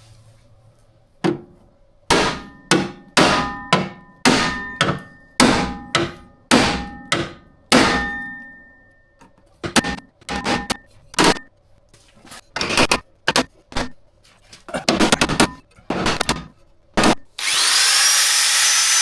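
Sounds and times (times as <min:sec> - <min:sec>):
hammer clanging on steel: 0:02.1 - 0:11.5.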